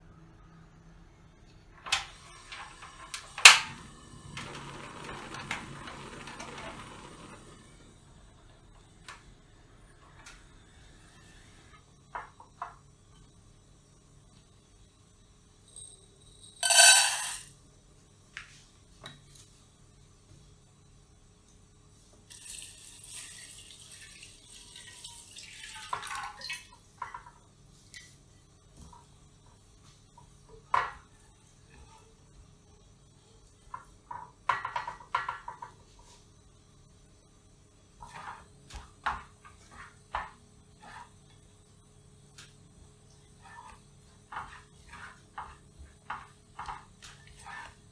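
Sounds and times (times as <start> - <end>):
kitchen utensils knocking and clinking: 16.6 - 17.5
liquid pouring: 22.3 - 26.7.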